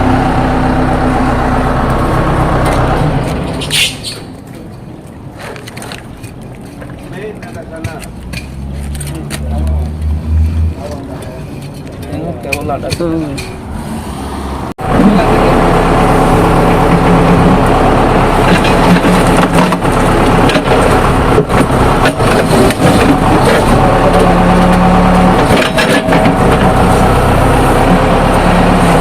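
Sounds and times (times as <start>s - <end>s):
loud engine running: 0.0s - 3.6s, 14.8s - 29.0s
cracking and knocking noises: 5.4s - 10.5s, 18.5s - 24.8s.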